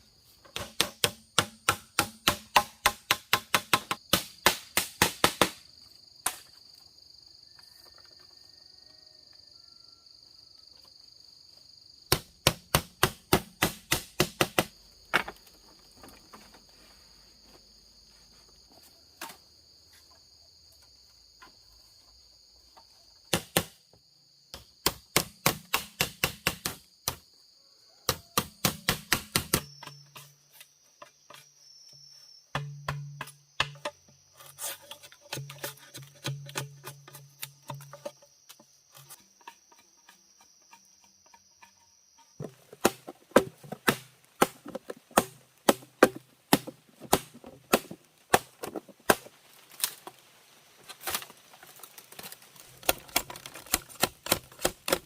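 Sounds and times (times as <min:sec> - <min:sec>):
insects chirping: 0:00.0 - 0:55.0
wood chopping blows: 0:00.5 - 0:06.5, 0:12.1 - 0:15.3, 0:42.4 - 0:50.0, 0:52.8 - 0:55.0.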